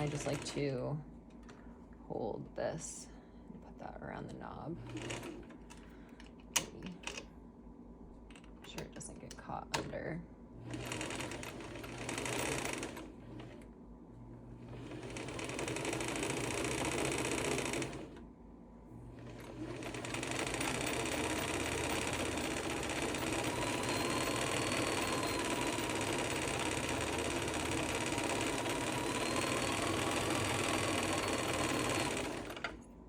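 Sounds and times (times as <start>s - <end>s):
sewing machine motor running: 0.0s - 0.7s, 4.8s - 5.5s, 10.6s - 13.6s, 14.6s - 18.2s, 19.1s - 32.8s.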